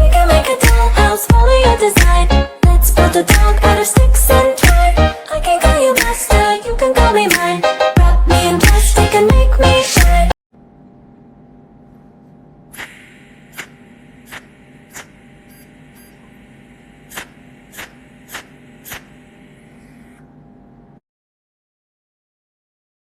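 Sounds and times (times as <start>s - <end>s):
welding machine humming: 12.5s - 21.0s
sharp clicks: 17.1s - 19.1s.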